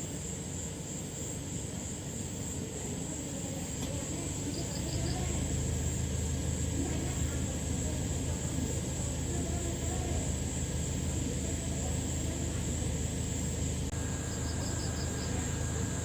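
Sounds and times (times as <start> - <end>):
cricket chirps: 0.0 - 16.0
high-pitched insect drone: 6.8 - 16.0.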